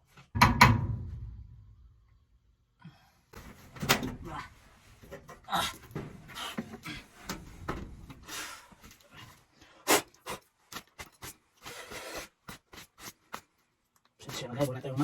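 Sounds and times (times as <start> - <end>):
knocks: 0.4 - 1.6.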